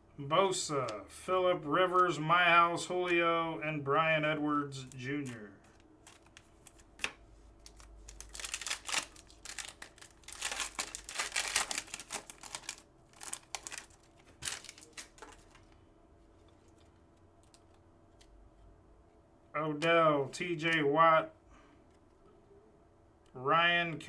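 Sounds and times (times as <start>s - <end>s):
card packs crinkling and tearing: 4.7s - 15.8s, 16.6s - 18.4s.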